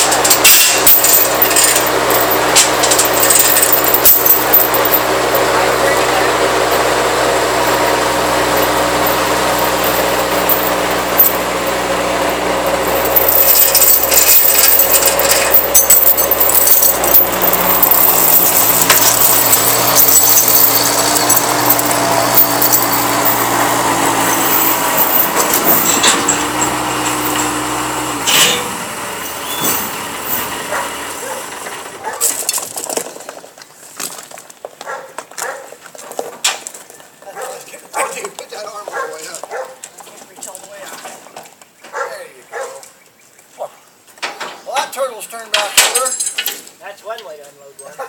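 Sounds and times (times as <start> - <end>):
heavy equipment engine running: 0.0 - 32.1
metal rattling and clanking: 0.0 - 34.4, 45.4 - 47.9.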